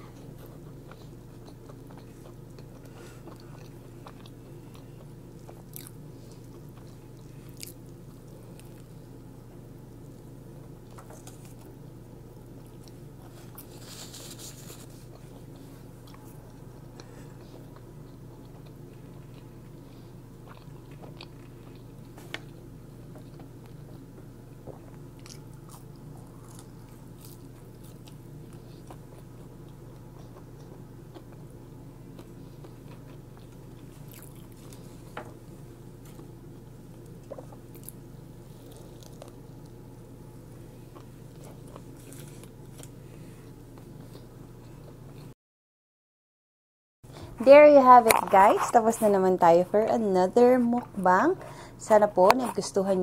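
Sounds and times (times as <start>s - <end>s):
steady low hum: 0.0s - 45.4s, 47.0s - 53.0s
person biting and chewing food: 0.2s - 9.0s, 12.7s - 31.4s, 32.1s - 35.1s, 37.0s - 39.8s, 40.9s - 45.3s, 48.0s - 49.1s.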